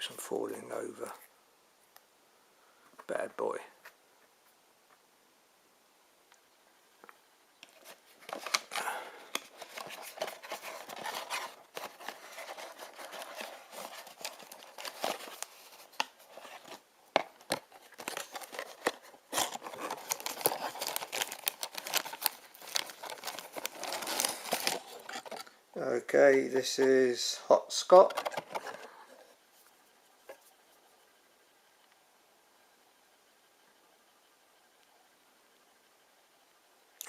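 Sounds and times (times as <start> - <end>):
packaging crinkling and tearing: 7.6 - 25.6.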